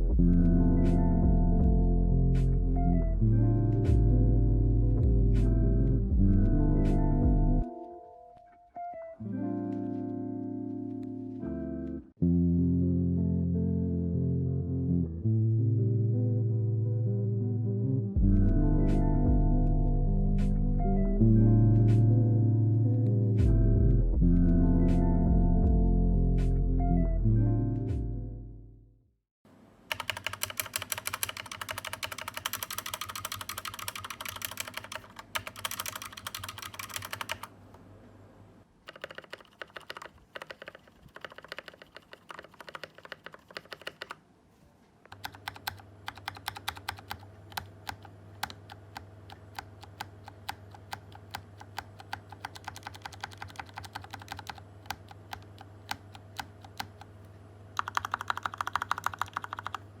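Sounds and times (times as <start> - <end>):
low steady hum: 0.0 - 8.4
fast typing on mechanical keyboard: 29.9 - 37.6, 38.8 - 44.2, 45.1 - 57.2, 57.8 - 59.9.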